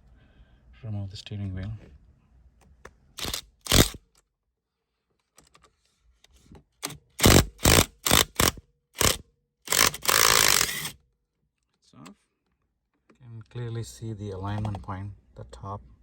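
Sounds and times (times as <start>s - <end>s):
ratchet clicking: 3.2s - 4.0s, 6.8s - 11.0s.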